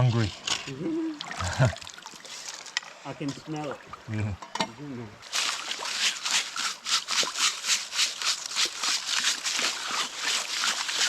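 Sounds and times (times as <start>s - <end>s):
gravel rattling in a sieve: 5.2s - 11.0s.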